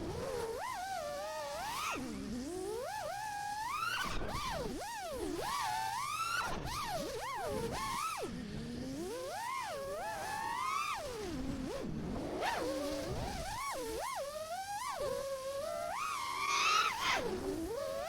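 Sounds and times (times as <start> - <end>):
quadcopter motors whining: 12.8 - 18.0.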